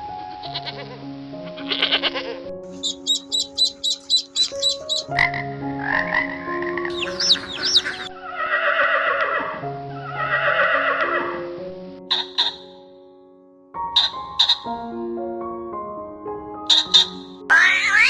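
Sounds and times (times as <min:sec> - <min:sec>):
background music: 0:02.3 - 0:08.4
animal calls: 0:02.7 - 0:05.3, 0:06.9 - 0:08.8, 0:17.5 - 0:18.0.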